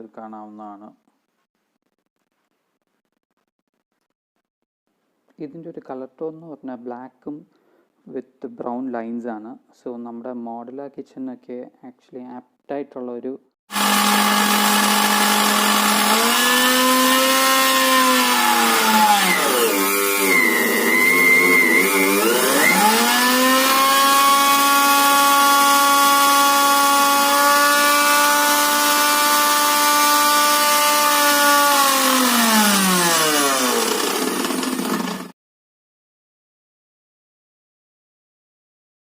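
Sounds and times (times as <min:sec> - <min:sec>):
mixer grinder motor whine: 0:13.7 - 0:35.3.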